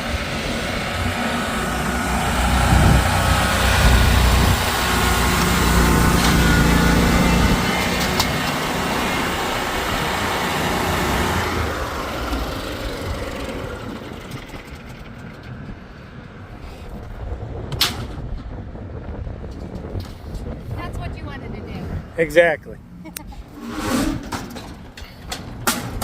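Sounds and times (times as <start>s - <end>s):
lawn mower engine: 0.0s - 16.1s.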